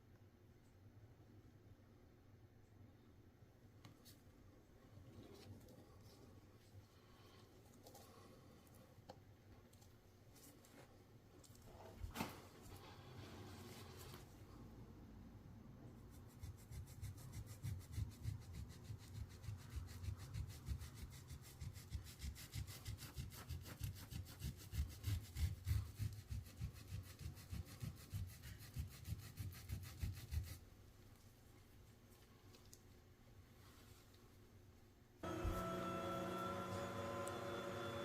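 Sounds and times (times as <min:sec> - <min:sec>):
stiff brush scrubbing tile: 0:16.1 - 0:30.7.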